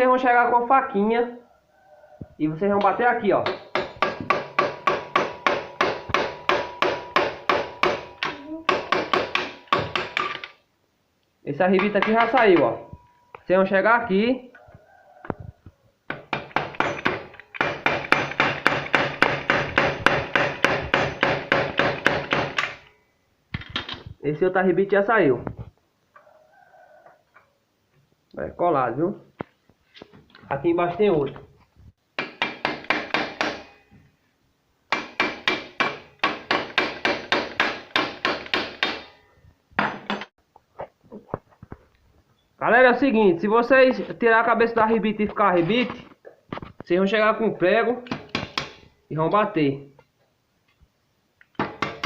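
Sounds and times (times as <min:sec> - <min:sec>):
metal hammering on metal: 0:02.8 - 0:10.5, 0:11.8 - 0:13.1, 0:16.1 - 0:22.9, 0:32.2 - 0:33.8, 0:34.9 - 0:39.2, 0:51.6 - 0:52.0.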